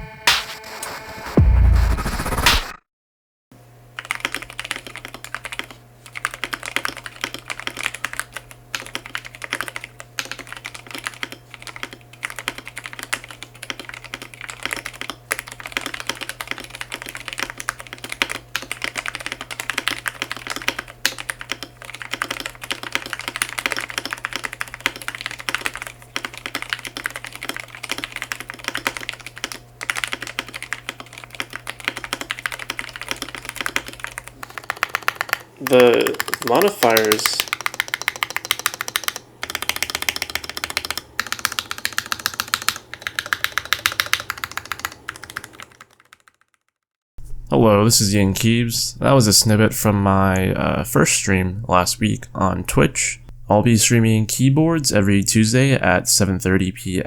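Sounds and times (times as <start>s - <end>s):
fast mechanical keyboard typing: 4.0s - 46.8s
steady low hum: 4.4s - 45.7s, 47.2s - 57.0s.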